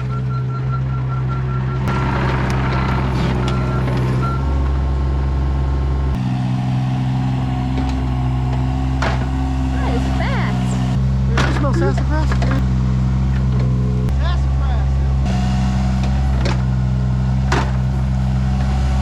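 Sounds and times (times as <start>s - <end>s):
travel alarm beeping: 0.0s - 2.0s
excavator diesel engine running: 0.0s - 19.0s.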